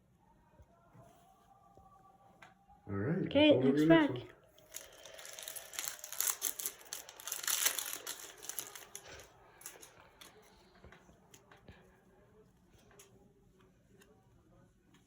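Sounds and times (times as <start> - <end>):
foil wrapper crinkling and tearing: 4.6 - 10.4.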